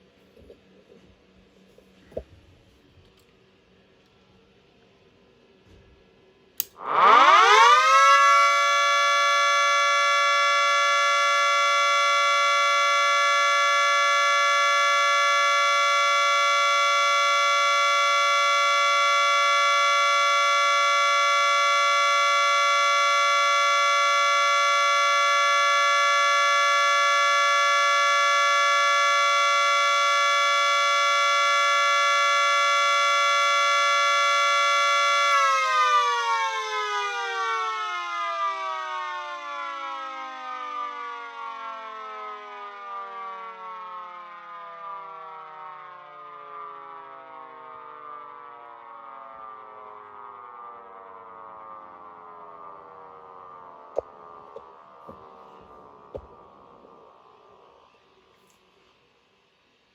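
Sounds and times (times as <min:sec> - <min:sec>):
siren switch click: 0:06.6 - 0:07.8, 0:54.0 - 0:57.1
two-tone siren steady chord: 0:06.6 - 0:59.9.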